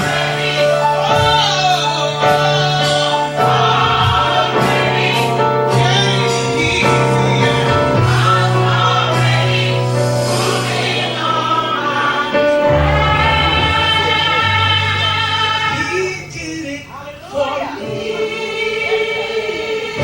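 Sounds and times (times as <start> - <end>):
church choir singing: 0.0 - 20.0
low instrumental accompaniment: 12.4 - 16.8.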